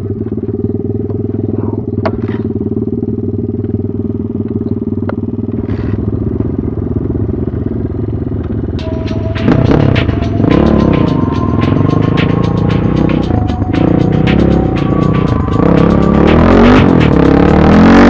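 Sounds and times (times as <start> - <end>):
motorcycle engine idling: 0.0 - 18.0.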